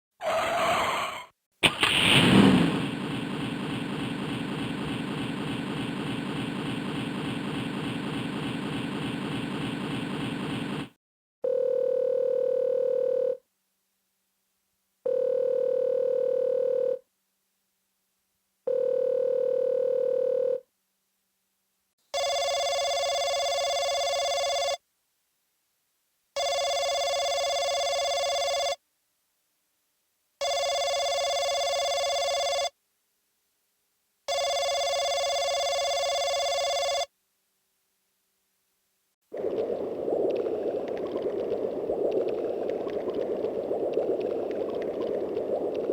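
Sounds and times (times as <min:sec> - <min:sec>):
rough buzzy electronic effect: 0:01.6 - 0:10.9
electronic telephone rings: 0:11.4 - 0:13.4, 0:15.1 - 0:17.0, 0:18.7 - 0:20.6, 0:22.2 - 0:24.8, 0:26.4 - 0:28.8, 0:30.4 - 0:32.8, 0:34.3 - 0:37.1.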